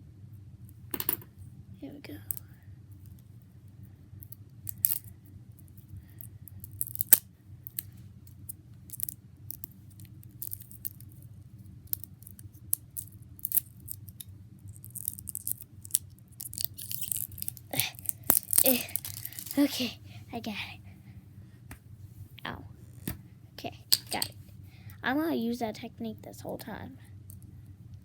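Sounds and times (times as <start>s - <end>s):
low background hum: 0.0s - 28.0s.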